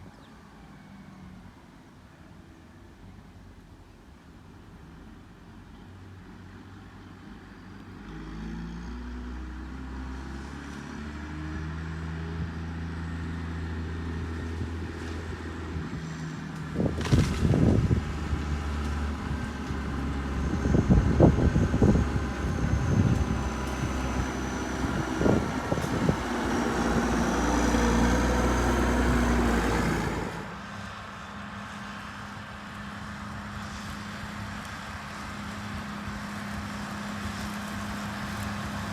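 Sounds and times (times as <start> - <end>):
tractor diesel engine running: 11.9 - 38.9.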